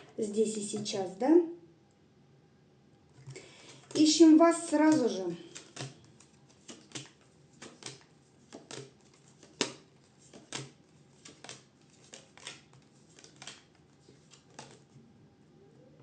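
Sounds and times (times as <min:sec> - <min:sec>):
cards flicking and tapping: 0:03.2 - 0:14.9.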